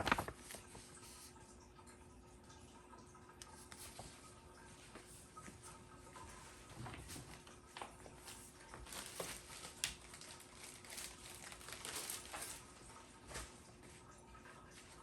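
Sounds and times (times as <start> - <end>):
packaging crinkling and rustling: 0.0 - 0.8, 7.1 - 13.5.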